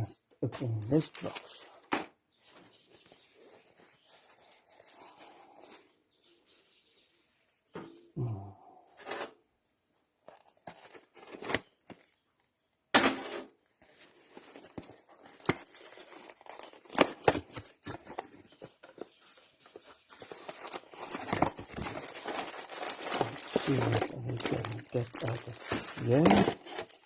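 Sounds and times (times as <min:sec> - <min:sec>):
packaging rustling: 0:00.8 - 0:02.1, 0:10.2 - 0:12.2, 0:13.7 - 0:27.0
packaging tearing and crinkling: 0:10.3 - 0:12.2, 0:14.0 - 0:18.3, 0:20.1 - 0:27.0.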